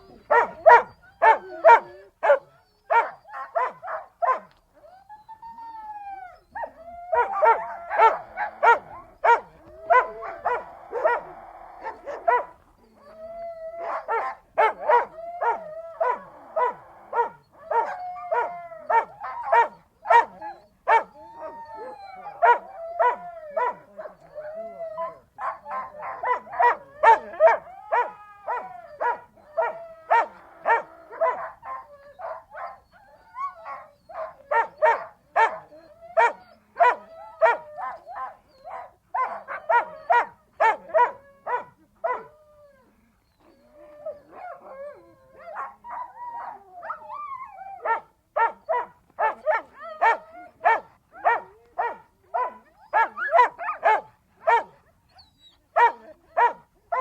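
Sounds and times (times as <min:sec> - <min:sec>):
dog whining and howling: 0:00.0 - 0:57.0
dog barking: 0:00.3 - 0:04.6, 0:07.2 - 0:12.6, 0:13.8 - 0:21.1, 0:25.4 - 0:32.8, 0:33.7 - 0:42.3, 0:47.8 - 0:54.8, 0:55.8 - 0:57.0.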